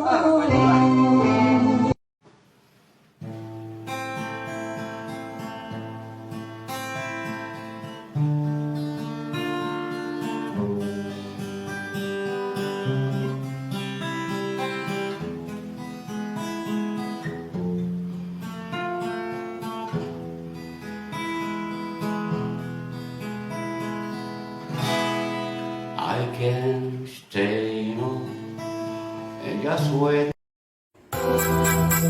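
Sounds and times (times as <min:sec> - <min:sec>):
guitar plucked and strummed: 0:03.2 - 0:30.0, 0:31.1 - 0:32.0
bass line: 0:31.1 - 0:32.0
live band playing: 0:31.1 - 0:32.0.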